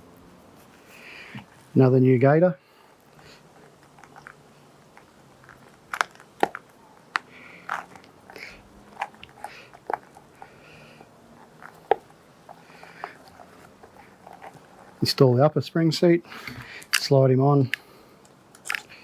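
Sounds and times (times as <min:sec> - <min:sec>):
rubbery crunching: 0:03.2 - 0:15.2, 0:16.4 - 0:17.9, 0:18.5 - 0:19.0.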